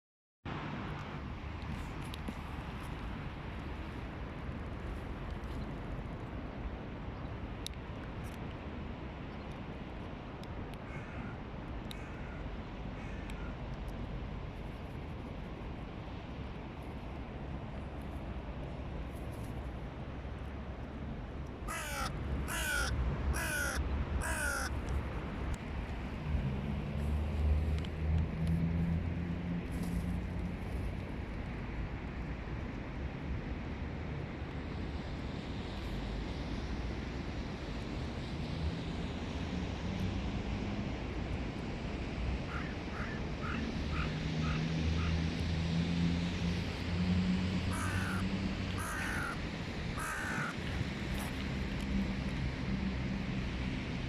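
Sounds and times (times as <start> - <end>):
short clipped crow calls: 10.8 - 12.4, 13.0 - 13.6, 21.7 - 24.7, 42.5 - 45.2, 47.7 - 48.2, 48.8 - 49.4, 50.0 - 50.6
crows cawing: 10.9 - 11.4, 13.0 - 13.5, 21.7 - 24.7, 42.5 - 45.2, 47.7 - 49.4, 50.0 - 50.6.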